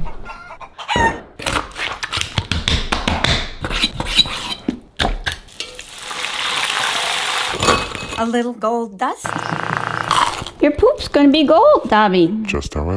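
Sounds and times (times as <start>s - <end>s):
utensils and dishes clattering: 7.5s - 8.4s.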